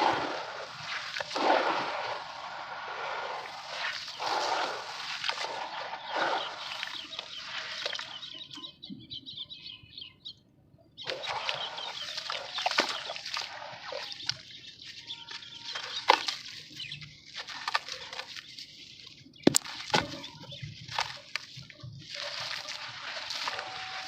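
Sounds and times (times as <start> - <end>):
dry sand-cement crumbling: 0.0 - 8.2, 15.0 - 24.0.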